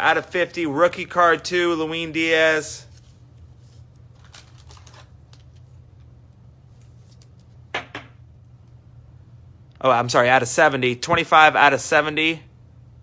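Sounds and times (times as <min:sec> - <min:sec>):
steady low hum: 0:00.0 - 0:13.0
card sleeves rustling: 0:02.9 - 0:05.8.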